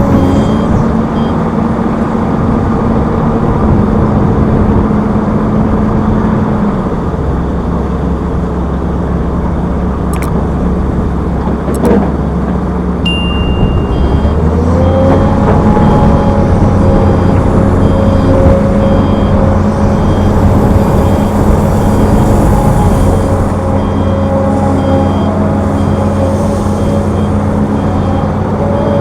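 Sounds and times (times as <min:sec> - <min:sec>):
heavy machinery diesel engines: 0:00.0 - 0:29.0
sharp clicks: 0:10.1 - 0:10.4
high steady beep: 0:13.1 - 0:14.4.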